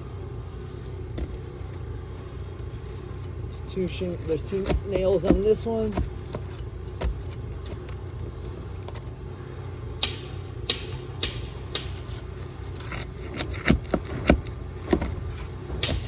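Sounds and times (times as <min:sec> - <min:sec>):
nails scraping under shingle: 0:00.0 - 0:16.0
steady low rumble: 0:00.0 - 0:16.0
sharp metallic clicks and knocks: 0:10.0 - 0:16.0.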